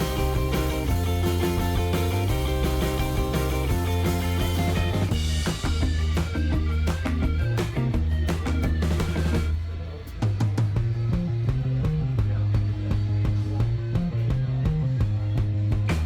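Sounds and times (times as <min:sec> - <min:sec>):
rock music with drums and bass: 0:00.0 - 0:16.0.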